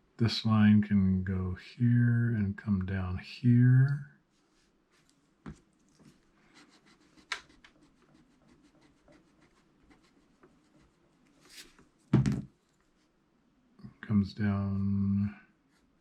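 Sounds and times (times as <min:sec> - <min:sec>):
pencil drawing on paper: 0:06.5 - 0:11.7.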